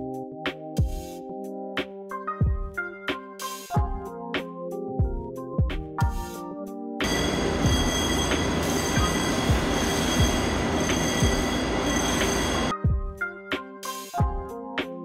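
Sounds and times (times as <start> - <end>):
background music with beat: 0.0 - 15.0
fire alarm bell ringing: 7.0 - 12.7.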